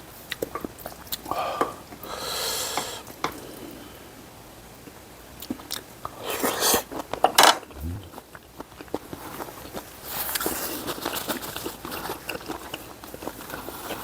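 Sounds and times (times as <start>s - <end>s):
wet mouth clicks: 7.7s - 8.2s
chewing: 7.7s - 14.0s.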